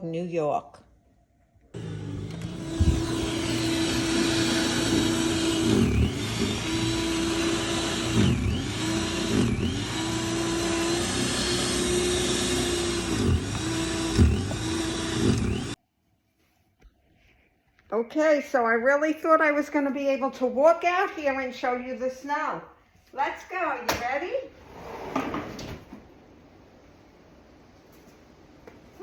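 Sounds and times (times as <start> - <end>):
motor humming: 1.8 - 15.8.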